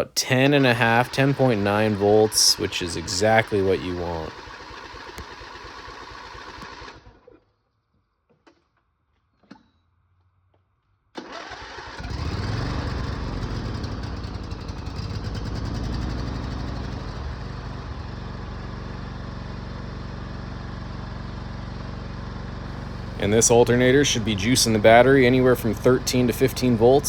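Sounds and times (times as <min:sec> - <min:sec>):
lawn mower engine cranking: 0:00.0 - 0:06.9, 0:22.7 - 0:27.0
lawn mower engine running: 0:00.0 - 0:06.9, 0:11.2 - 0:27.0.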